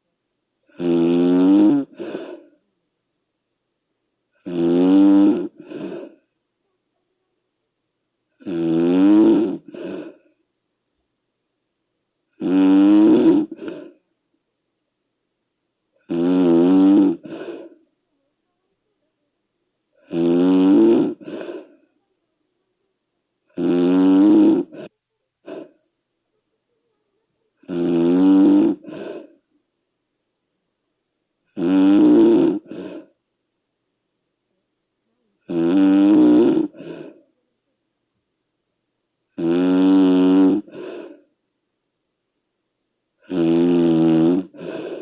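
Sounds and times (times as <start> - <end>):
person snoring loudly: 0.7 - 2.5, 4.4 - 6.2, 8.4 - 10.2, 12.4 - 14.0, 16.0 - 17.8, 20.0 - 21.7, 23.5 - 25.8, 27.6 - 29.3, 31.5 - 33.2, 35.5 - 37.2, 39.4 - 41.2, 43.2 - 45.0.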